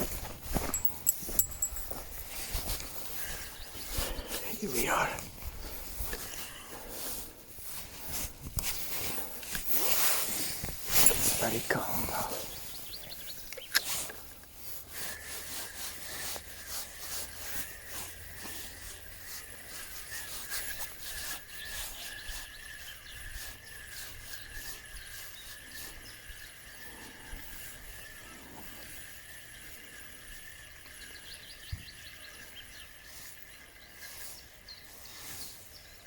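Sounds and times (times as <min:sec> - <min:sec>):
light clicks and rustles: 0:00.0 - 0:04.5, 0:07.8 - 0:11.6, 0:13.0 - 0:14.6.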